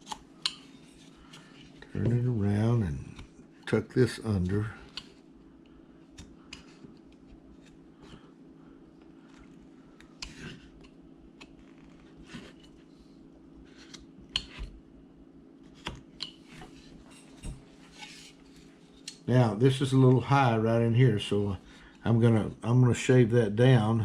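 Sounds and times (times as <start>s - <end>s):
low room hum: 0.0s - 24.0s.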